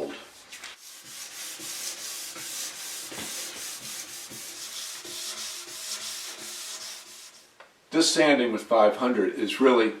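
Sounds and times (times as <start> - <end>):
sandpaper rubbing on wood: 0.4 - 7.5.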